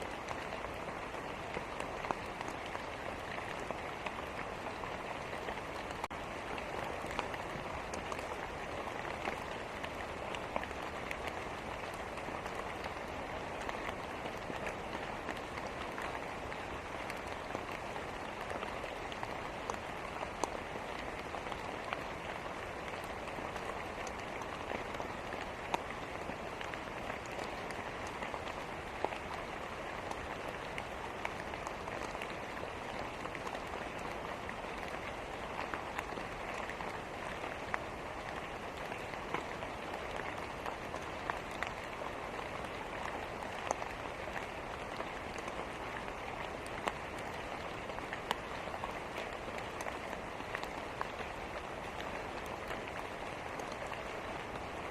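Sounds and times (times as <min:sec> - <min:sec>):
steady rain: 0:00.0 - 0:54.9.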